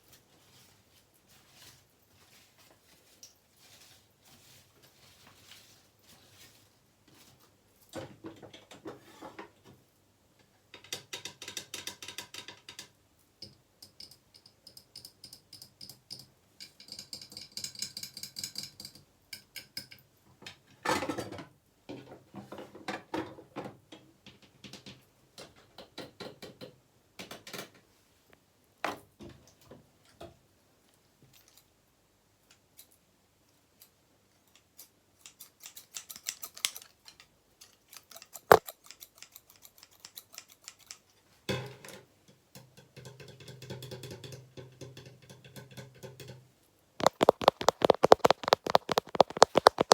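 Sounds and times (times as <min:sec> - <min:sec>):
fast tapping on hard objects: 0:38.4 - 0:38.7, 0:47.0 - 0:49.9.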